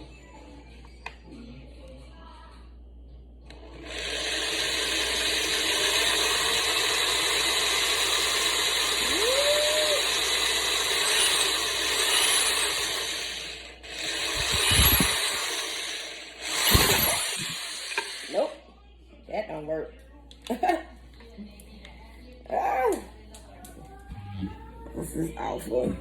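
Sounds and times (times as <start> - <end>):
electric screwdriver running: 3.8 - 18.6.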